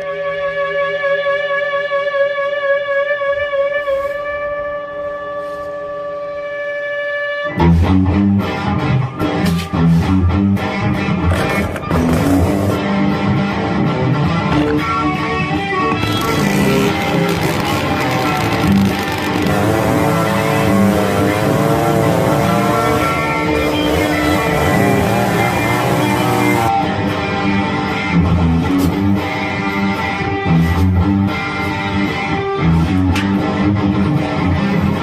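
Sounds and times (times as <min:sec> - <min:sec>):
guitar music: 0:07.5 - 0:35.0.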